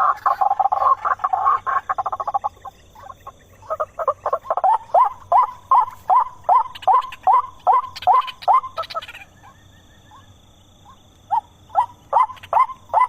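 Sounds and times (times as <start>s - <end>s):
waterhen harsh croaking: 0.0s - 9.4s
waterhen kwak calls: 0.0s - 13.0s.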